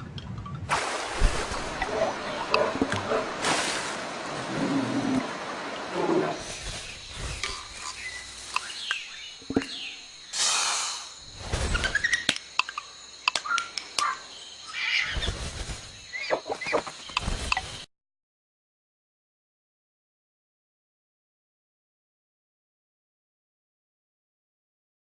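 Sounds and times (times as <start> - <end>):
sharp clicks and ticks: 12.3 - 14.0.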